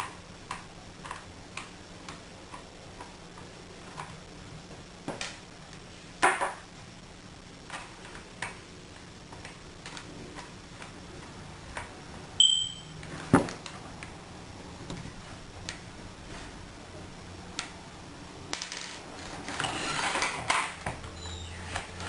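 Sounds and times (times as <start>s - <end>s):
short ringing ping: 12.4s - 13.0s.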